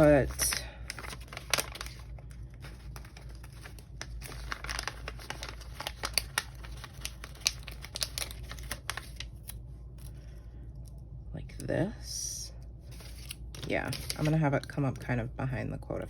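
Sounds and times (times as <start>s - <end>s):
paper sticker sheets crinkling: 0.0s - 10.4s, 12.8s - 14.8s
low steady hum: 0.0s - 16.0s.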